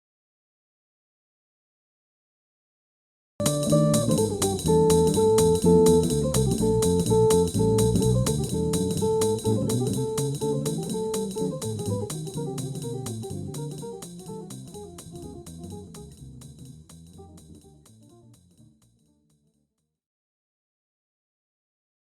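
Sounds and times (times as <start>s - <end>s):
instrumental music with steady beat: 3.4s - 18.6s.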